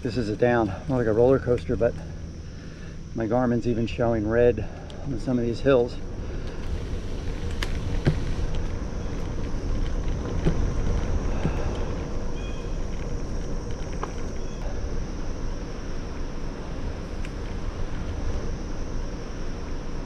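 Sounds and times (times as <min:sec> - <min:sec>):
bicycle rolling on trail: 0:00.0 - 0:20.0
wind buffeting microphone: 0:03.0 - 0:20.0
bike clicks and rattles: 0:06.3 - 0:14.6.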